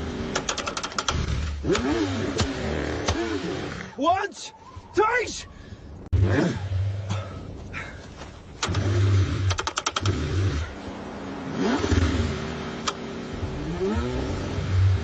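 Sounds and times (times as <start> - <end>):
car engine cranking: 0.0 - 3.9, 8.5 - 10.8, 11.6 - 14.4
sharp clicks: 0.3 - 3.2, 8.6 - 10.2.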